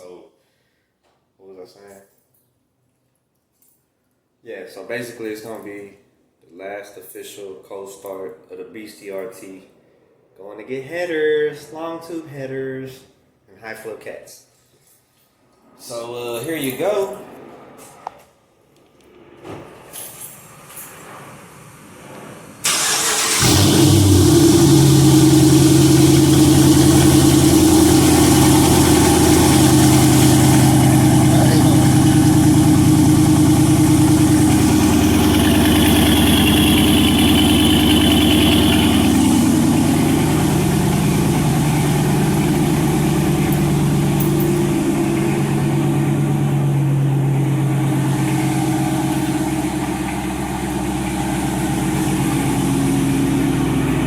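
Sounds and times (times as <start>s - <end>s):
car engine idling: 22.7s - 54.0s.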